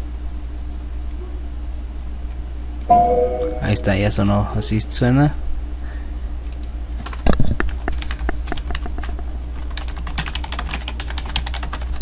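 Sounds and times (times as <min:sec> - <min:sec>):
low electrical hum: 0:00.0 - 0:12.0
fast keyboard typing: 0:07.0 - 0:12.0.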